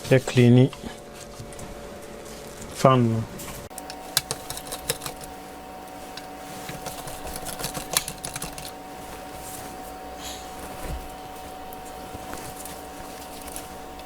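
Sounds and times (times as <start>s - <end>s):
faint hum: 3.2s - 14.0s
laptop parts clicking and tapping: 3.7s - 5.4s, 6.1s - 8.8s.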